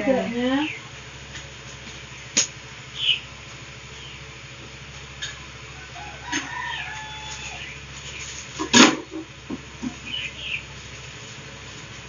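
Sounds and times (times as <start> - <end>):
birds chirping: 0.0 - 1.0, 2.0 - 10.8
steady low hum: 0.0 - 12.0
sharp click: 2.4 - 2.6.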